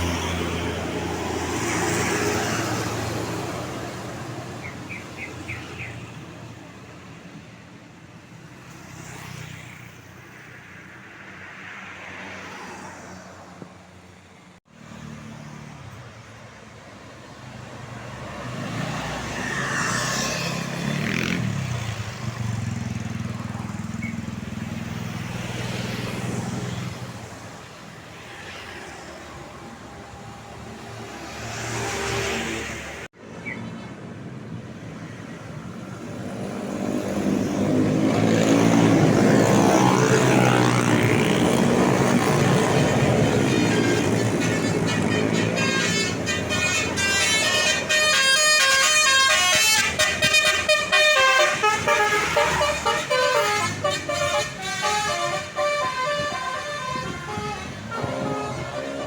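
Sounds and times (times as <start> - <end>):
road vehicles passing: 0.0 - 59.0
heavy vehicle engine rumbling: 37.7 - 59.0.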